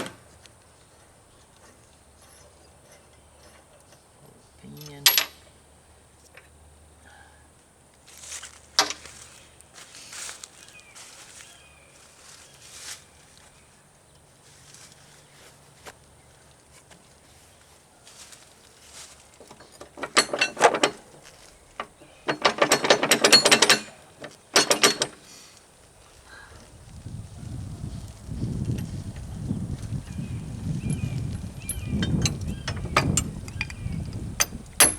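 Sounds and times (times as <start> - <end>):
sharp metal clink: 31.6 - 34.9.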